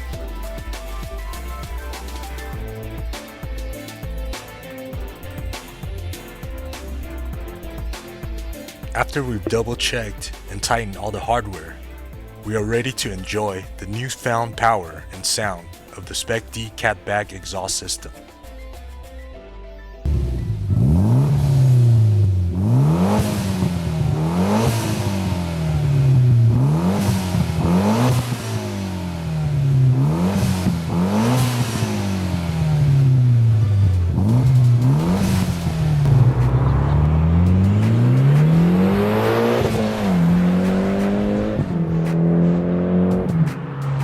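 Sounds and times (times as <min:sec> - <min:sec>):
car engine revving: 0:20.1 - 0:44.0.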